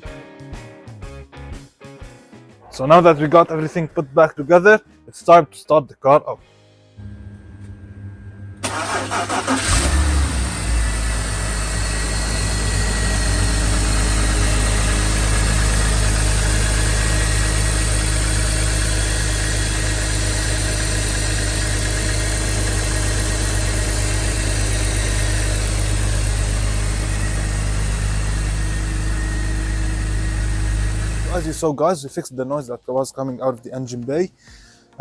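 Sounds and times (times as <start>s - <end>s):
car engine idling: 8.6s - 31.7s.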